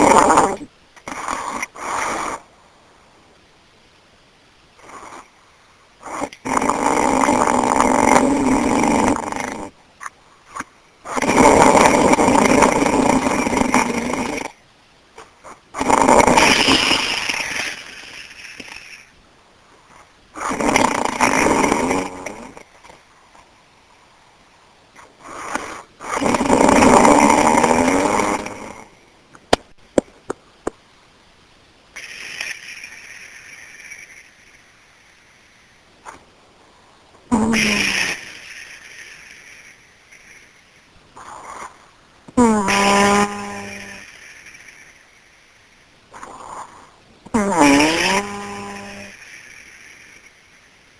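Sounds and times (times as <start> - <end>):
person snoring: 0.0 - 0.7, 6.0 - 9.7, 11.1 - 14.5, 20.4 - 22.6, 25.2 - 28.9
quiet breaths: 0.0 - 42.4, 43.7 - 50.9
soft hiss: 0.0 - 50.9.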